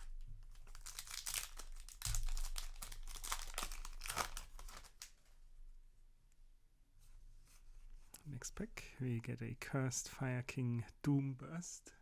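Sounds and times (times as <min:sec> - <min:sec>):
foil wrapper crinkling and tearing: 0:00.4 - 0:05.2.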